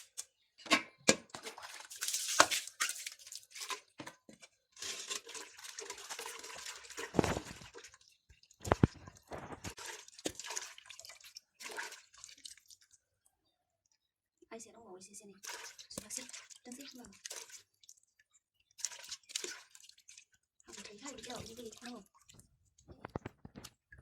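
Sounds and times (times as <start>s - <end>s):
kitchen knocks and clicks: 0.6s - 1.4s, 22.9s - 23.8s
wet rustling noise: 5.8s - 12.6s, 20.8s - 24.0s.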